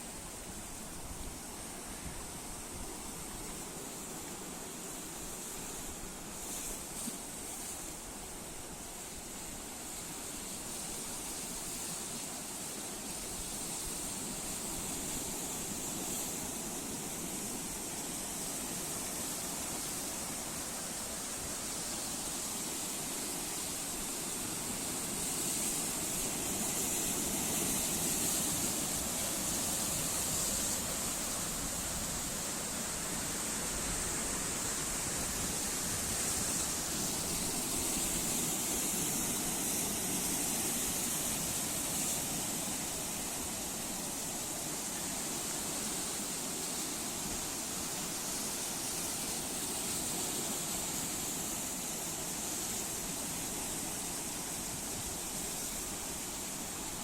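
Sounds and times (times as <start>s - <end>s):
waves breaking: 13.1s - 57.0s.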